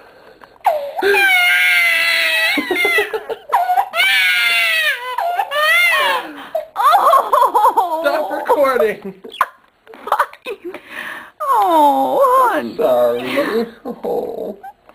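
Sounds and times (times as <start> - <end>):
baby crying: 0.6 - 8.4.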